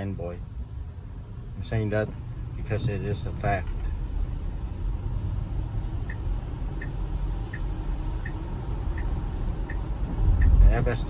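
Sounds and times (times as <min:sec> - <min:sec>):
road and tyre rumble: 0:00.0 - 0:11.0
turn signal ticking: 0:05.5 - 0:11.0.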